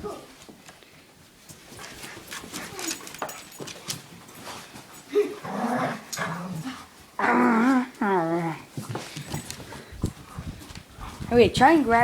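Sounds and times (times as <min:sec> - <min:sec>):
dog growling: 0:05.4 - 0:08.7.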